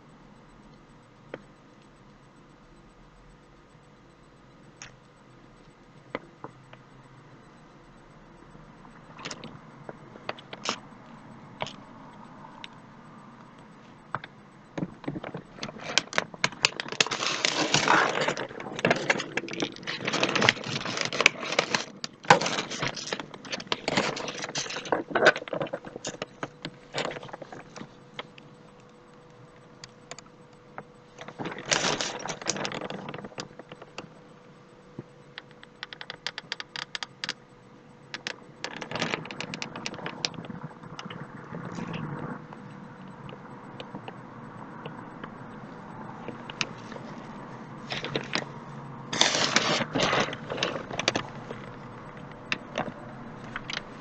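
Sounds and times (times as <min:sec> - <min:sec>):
scattered clicks: 0:00.0 - 0:54.0
dense clattering and rustling: 0:15.0 - 0:27.9, 0:31.2 - 0:33.9, 0:49.1 - 0:54.0.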